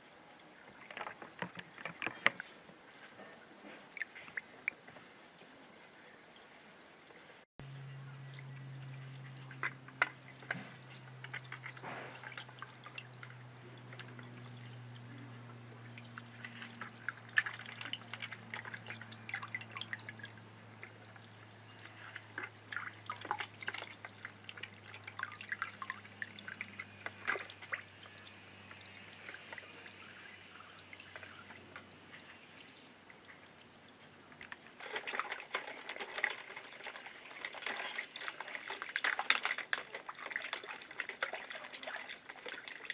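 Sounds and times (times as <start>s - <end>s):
water trickling and dripping: 3.8s - 42.9s
low hum: 7.6s - 34.8s
small splashes: 8.3s - 42.9s.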